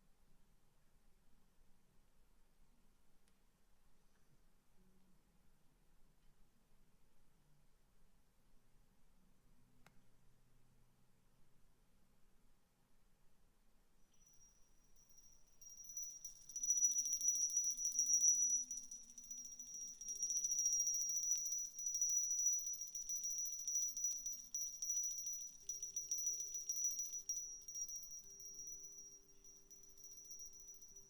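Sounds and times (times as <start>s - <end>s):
jingling percussion: 14.1s - 31.0s.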